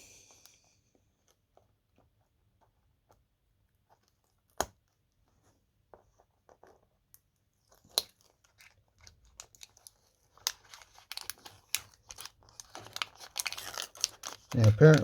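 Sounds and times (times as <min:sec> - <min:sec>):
packaging crinkling: 0:08.0 - 0:15.0.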